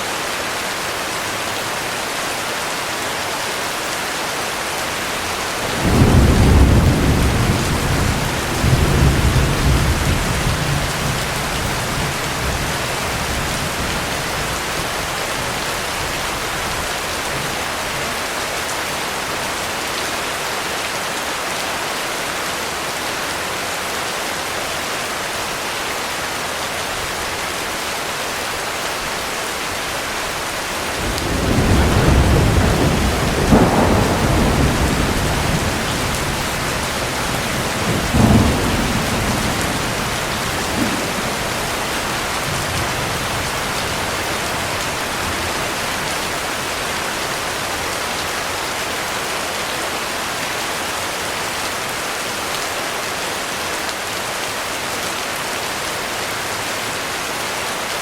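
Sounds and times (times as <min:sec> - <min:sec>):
heavy rain: 0:00.0 - 0:58.0
thunder cracking and rumbling: 0:05.6 - 0:15.2, 0:30.9 - 0:46.6.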